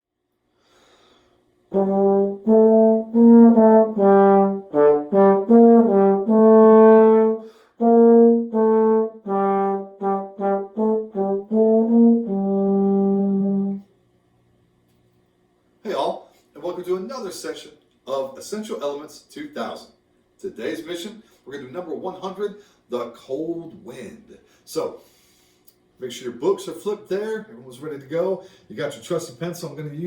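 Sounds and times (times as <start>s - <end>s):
brass instrument solo melody: 1.7s - 13.9s.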